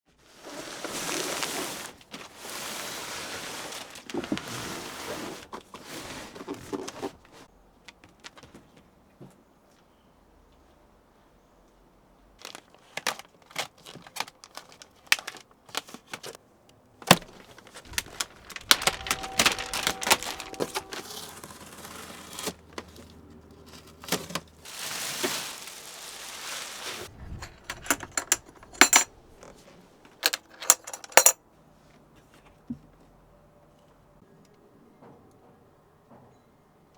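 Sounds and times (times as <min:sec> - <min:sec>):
objects clicking and rattling: 0:17.0 - 0:23.1, 0:27.2 - 0:31.4.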